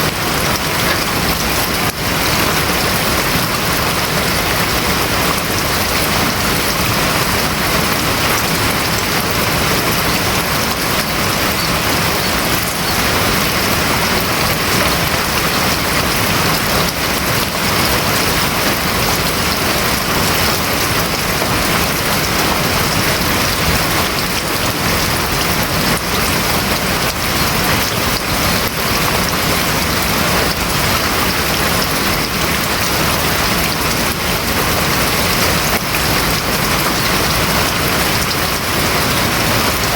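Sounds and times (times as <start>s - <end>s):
heavy rain drumming on roof: 0.0s - 39.9s.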